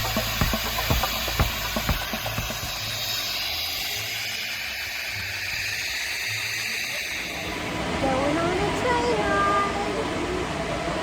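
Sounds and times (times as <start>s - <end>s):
music with steady beat: 0.0s - 3.6s
steady hiss: 0.0s - 11.0s.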